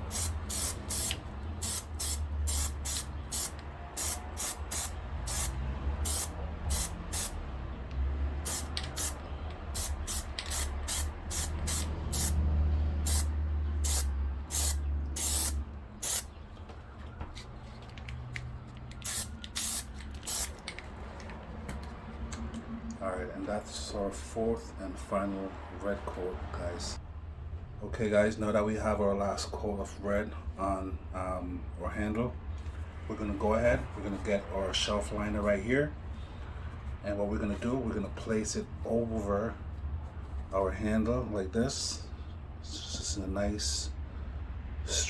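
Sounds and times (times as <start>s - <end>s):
aerosol can spraying: 0.0s - 7.4s, 8.5s - 9.2s, 9.8s - 12.4s, 13.1s - 16.3s, 19.0s - 20.6s.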